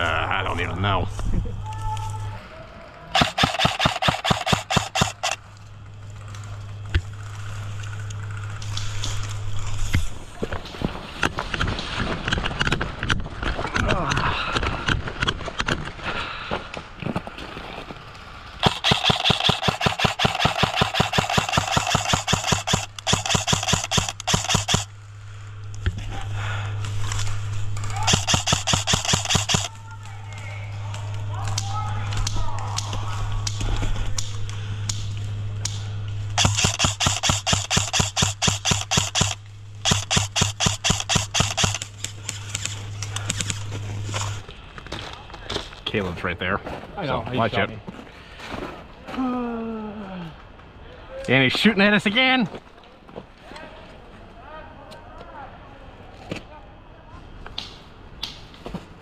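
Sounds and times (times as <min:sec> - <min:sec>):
steady low hum: 0:00.0 - 0:54.8
airsoft gun firing full-auto: 0:03.1 - 0:05.4, 0:18.6 - 0:24.9, 0:27.9 - 0:29.7, 0:36.4 - 0:41.9.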